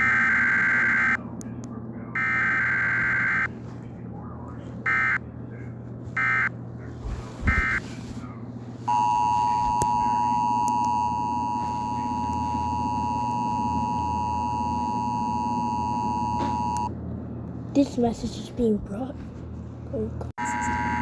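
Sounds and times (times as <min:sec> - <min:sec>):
buzzy data burst: 0:08.9 - 0:16.9, 0:20.4 - 0:21.0
two-tone attention signal: 0:08.9 - 0:16.9, 0:20.4 - 0:21.0.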